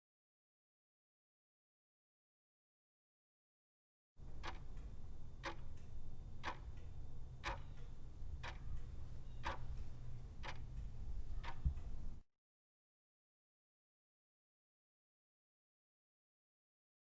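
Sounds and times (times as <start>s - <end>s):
clock ticking: 4.2s - 12.2s
low steady hum: 4.2s - 12.2s.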